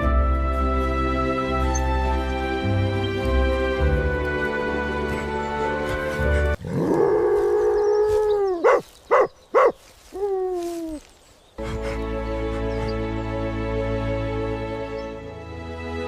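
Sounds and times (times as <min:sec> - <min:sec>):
background music: 0:00.0 - 0:08.1, 0:11.6 - 0:16.0
wolf howling: 0:06.0 - 0:08.9, 0:10.2 - 0:11.0
wolf yelps: 0:06.7 - 0:10.8.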